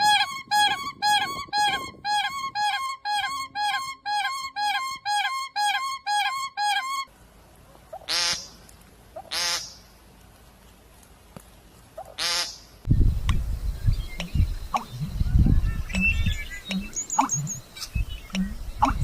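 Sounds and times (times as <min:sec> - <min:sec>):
harsh bird calls: 0:13.6 - 0:19.0
bird calling in short calls: 0:14.8 - 0:19.0.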